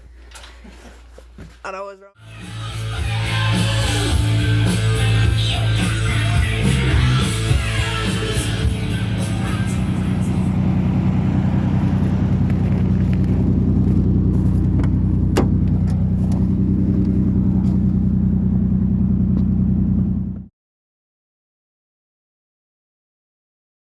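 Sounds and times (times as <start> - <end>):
engine running: 2.2 - 20.5
engine tick: 8.4 - 20.5.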